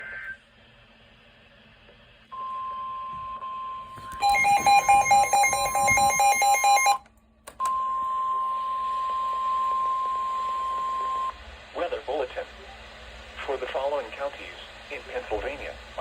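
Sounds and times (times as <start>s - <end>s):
electronic alarm beeping: 2.4s - 7.0s
steady single-pitch alert tone: 4.2s - 7.0s.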